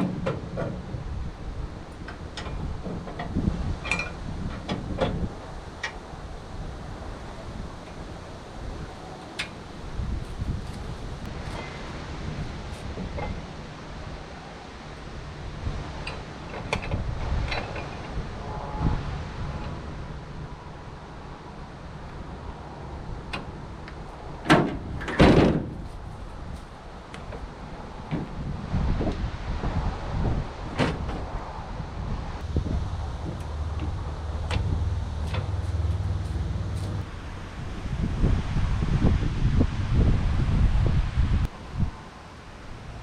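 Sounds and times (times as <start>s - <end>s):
low rumble of wind: 0.0s - 43.0s
loud clunks: 24.5s - 25.8s.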